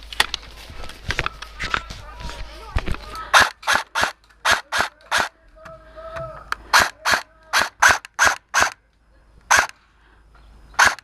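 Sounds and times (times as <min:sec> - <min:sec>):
airsoft gun shots: 0:03.3 - 0:05.3, 0:06.7 - 0:08.8, 0:09.5 - 0:09.8, 0:10.8 - 0:11.0.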